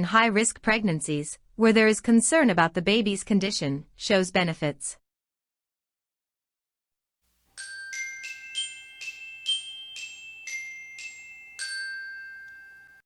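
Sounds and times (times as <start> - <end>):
glockenspiel melody: 7.5 - 13.0.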